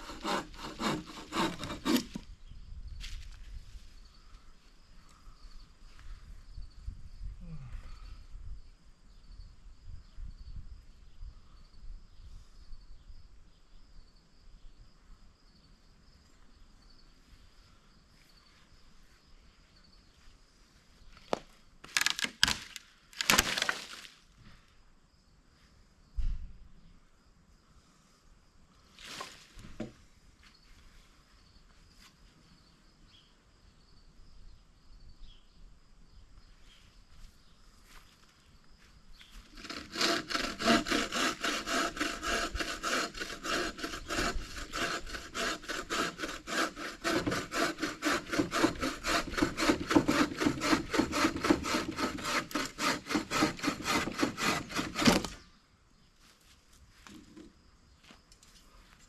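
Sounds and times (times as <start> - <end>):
hand saw cutting wood: 0.0 - 2.3, 39.5 - 55.4.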